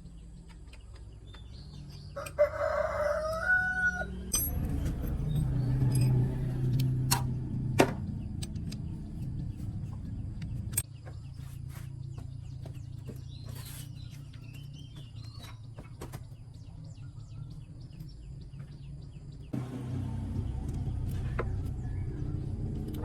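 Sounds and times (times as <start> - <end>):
birds chirping: 0.0 - 23.0
low hum: 1.5 - 13.4, 18.2 - 23.0
hand tools tapping on metal: 4.2 - 10.9.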